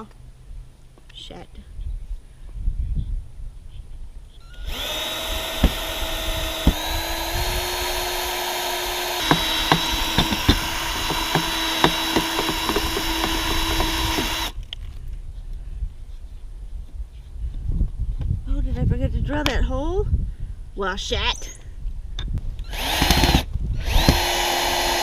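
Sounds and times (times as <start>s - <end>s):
power drill running: 4.5s - 14.6s, 22.7s - 25.0s.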